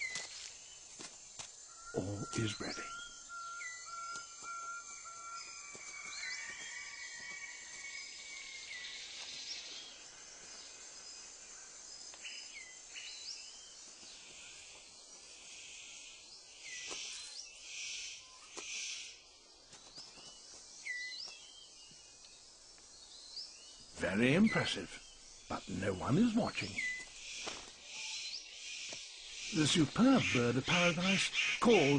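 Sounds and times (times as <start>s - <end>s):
high insect drone: 0.0s - 31.9s
bird chirping calls: 1.7s - 14.9s, 23.0s - 31.9s.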